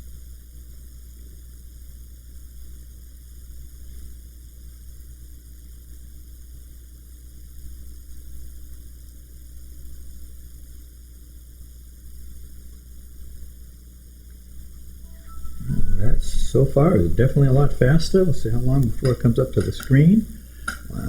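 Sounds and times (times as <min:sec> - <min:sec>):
faint hiss: 0:07.4 - 0:21.0
low hum: 0:14.3 - 0:21.0.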